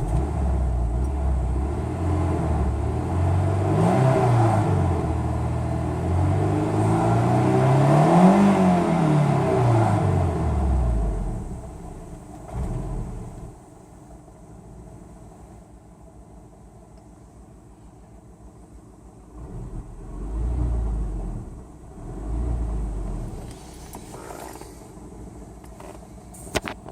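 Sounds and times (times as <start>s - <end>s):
car engine running: 0.0s - 3.9s, 8.7s - 26.9s.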